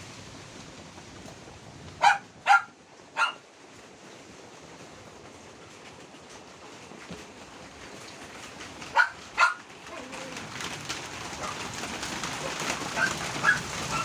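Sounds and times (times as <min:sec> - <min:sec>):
dog barking: 0:02.0 - 0:03.4, 0:08.9 - 0:09.6, 0:13.0 - 0:14.0.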